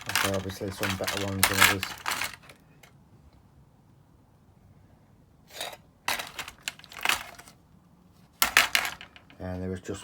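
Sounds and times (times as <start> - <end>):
circuit boards clattering and clicking: 0.0 - 2.9, 5.6 - 7.6, 8.4 - 9.4.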